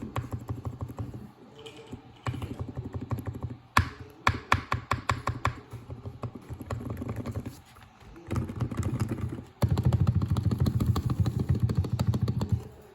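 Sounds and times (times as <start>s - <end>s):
fast keyboard typing clatter: 0.0s - 1.2s, 2.2s - 3.9s, 5.0s - 7.6s, 8.2s - 12.8s.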